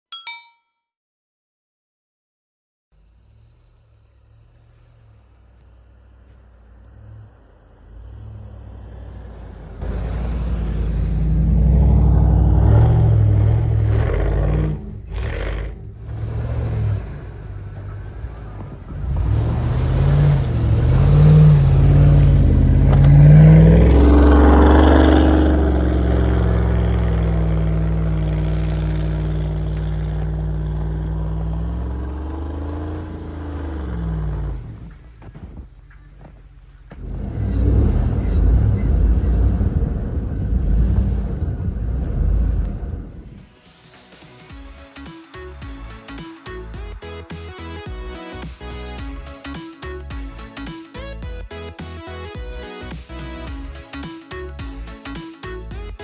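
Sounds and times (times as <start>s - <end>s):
car engine revving hard: 3.0s - 35.2s, 36.9s - 43.5s
rushing noise: 37.0s - 44.4s.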